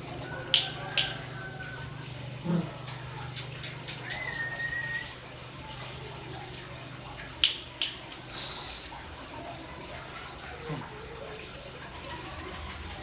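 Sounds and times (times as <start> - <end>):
songbird calling: 3.3 - 6.4.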